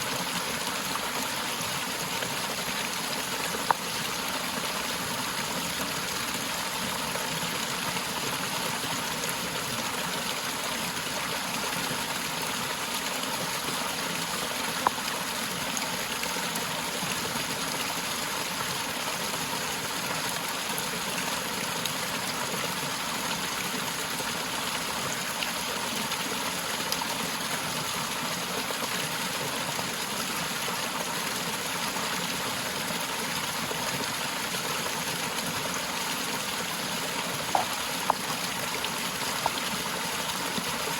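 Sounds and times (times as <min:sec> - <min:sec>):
waterfall splashing: 0:37.2 - 0:40.2.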